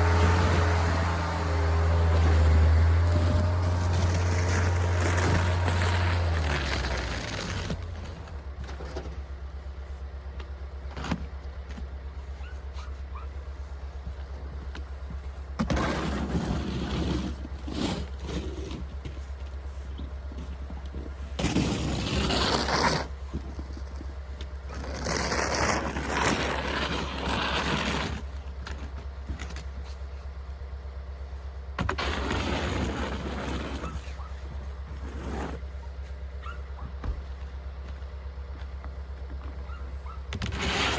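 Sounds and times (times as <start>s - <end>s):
snow shovel scraping snow: 0.0s - 8.4s, 15.6s - 20.5s, 21.2s - 24.0s, 24.7s - 29.0s, 31.8s - 36.2s, 40.4s - 40.9s
low engine hum: 0.0s - 40.9s.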